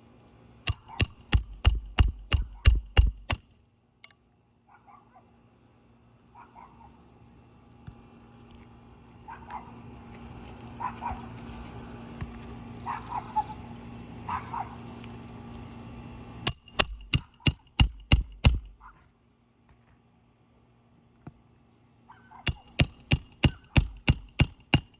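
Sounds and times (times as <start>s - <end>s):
hammer blows on metal: 0.7s - 3.4s, 22.5s - 24.9s.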